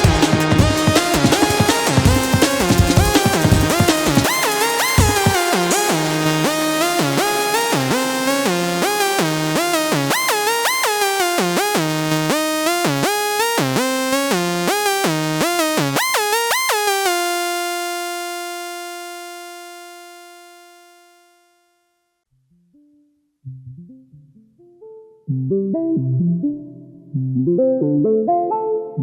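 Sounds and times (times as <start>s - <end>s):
gliding synth notes: 0.0s - 10.9s.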